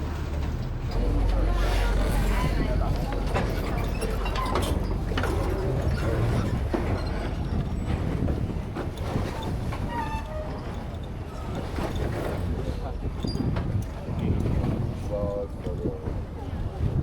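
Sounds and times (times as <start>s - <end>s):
ferry engine rumbling: 0.0s - 17.0s
faint voices: 0.8s - 7.6s.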